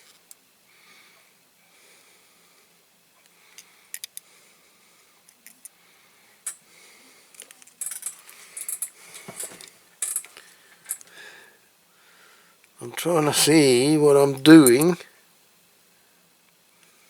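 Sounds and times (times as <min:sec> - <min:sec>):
metallic clinks of toy parts: 0:07.4 - 0:11.0.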